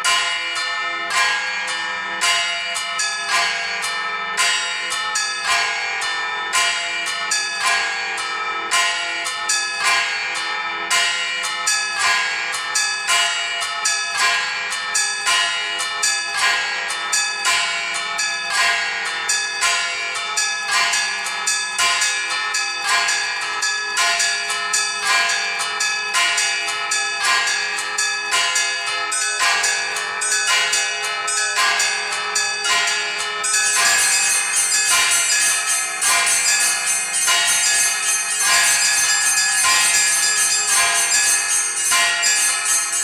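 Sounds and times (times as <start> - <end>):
church bells pealing: 0.0 - 43.0
bright high bell ringing: 26.9 - 43.0.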